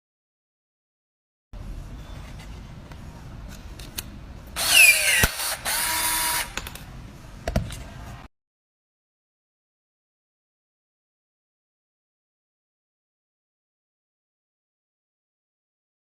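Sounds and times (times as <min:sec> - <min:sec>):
hammer drill running: 0:04.6 - 0:06.6.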